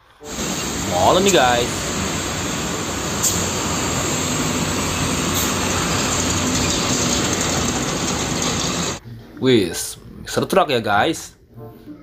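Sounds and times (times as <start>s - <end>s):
vehicle running noise: 0.1s - 9.0s.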